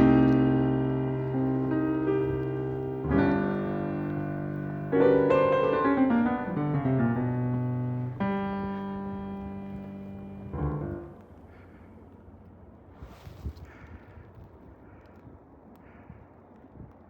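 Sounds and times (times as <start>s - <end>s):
jazz piano chords: 0.0s - 11.4s.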